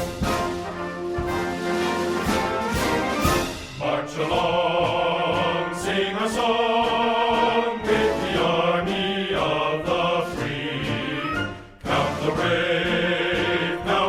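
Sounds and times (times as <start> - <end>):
orchestral accompaniment: 0.0 - 14.0
choir singing chant-like lines: 3.8 - 14.0.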